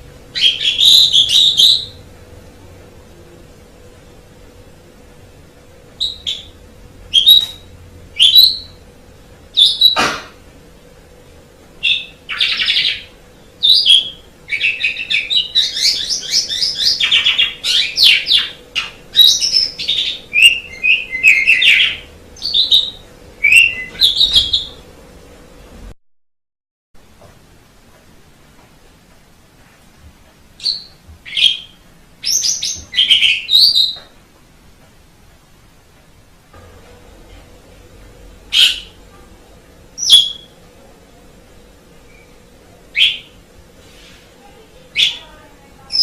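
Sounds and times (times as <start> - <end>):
faint steady hum: 0.0 - 26.0, 27.0 - 46.0
starling singing and chattering: 0.3 - 2.0, 11.8 - 24.8, 38.4 - 39.1, 39.8 - 43.6, 44.4 - 46.0.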